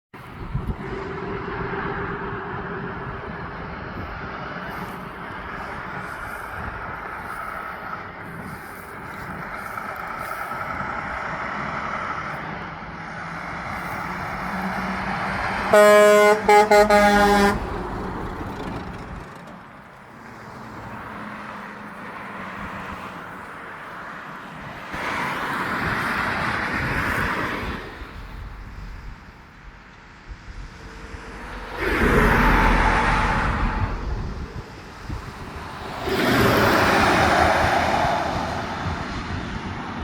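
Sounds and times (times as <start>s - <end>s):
road traffic passing: 0.2s - 40.0s.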